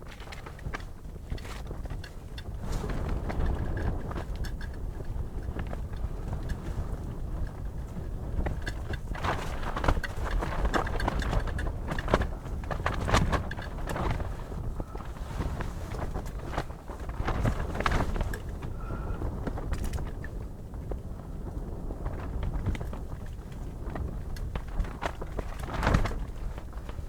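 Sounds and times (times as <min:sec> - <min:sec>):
wind on microphone: 0:00.0 - 0:27.0.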